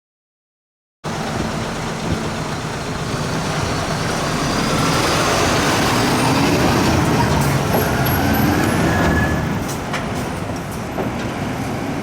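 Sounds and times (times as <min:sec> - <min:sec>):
street noise: 0:01.0 - 0:12.0
vehicle engine running: 0:01.1 - 0:08.4.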